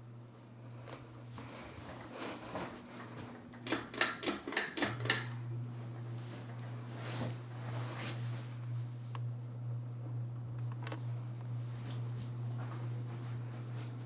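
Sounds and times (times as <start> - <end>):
ceiling fan motor humming: 0.0 - 14.0.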